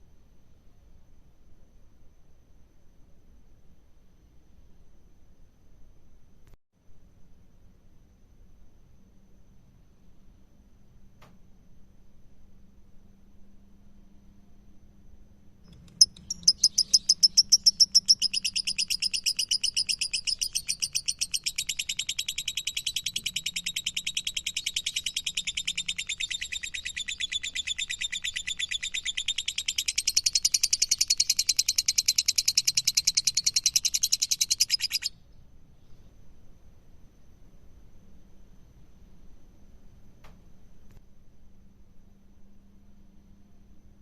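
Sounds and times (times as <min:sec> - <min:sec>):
lovebird rapid chattering chirps: 0:15.7 - 0:35.1.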